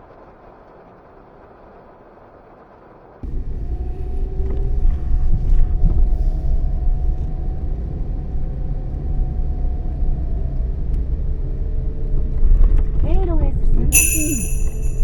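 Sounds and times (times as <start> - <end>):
faint steady whine: 0.0 - 15.0
car road and engine rumble: 3.2 - 13.9.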